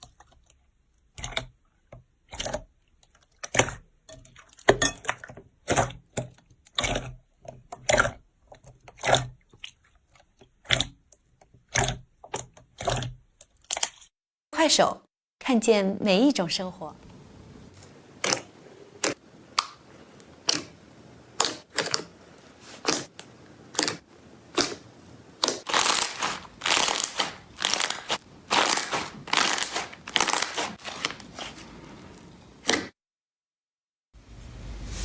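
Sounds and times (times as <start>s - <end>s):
slime squeezed by hand: 25.4s - 31.7s.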